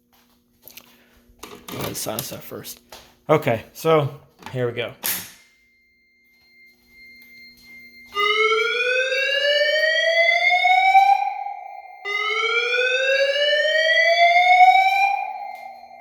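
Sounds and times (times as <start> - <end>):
faint steady high tone: 5.4 - 8.2
fire alarm whoop tone: 5.6 - 16.0.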